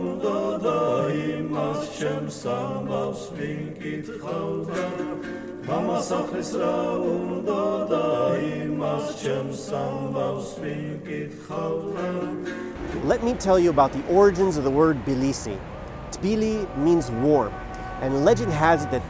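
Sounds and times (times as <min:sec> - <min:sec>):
male choir singing in harmony: 0:00.0 - 0:13.4.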